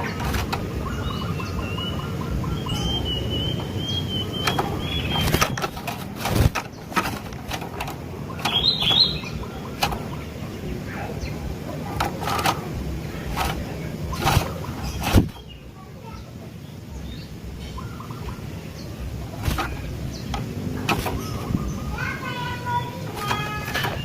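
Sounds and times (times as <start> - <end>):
bird clicks and chirp: 0.0 - 15.6, 17.6 - 24.0
low background noise: 0.0 - 24.0
bird whistling call: 0.9 - 5.4.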